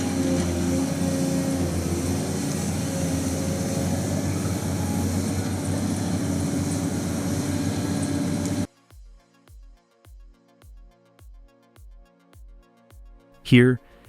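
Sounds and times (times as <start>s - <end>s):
heavy machinery running: 0.0s - 8.7s.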